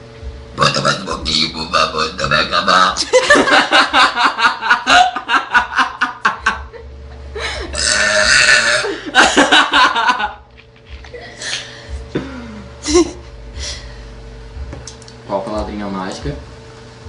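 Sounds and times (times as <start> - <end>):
girl burping loudly: 7.7 - 9.0.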